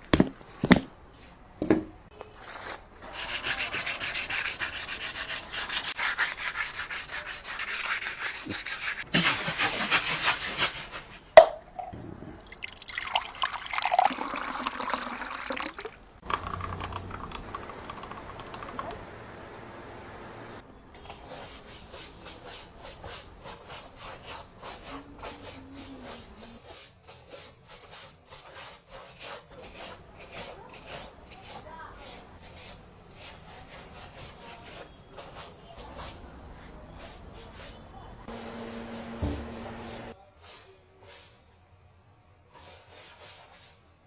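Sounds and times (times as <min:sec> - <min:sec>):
wood being sanded: 0:03.0 - 0:11.2, 0:21.4 - 0:36.2, 0:37.1 - 0:40.2.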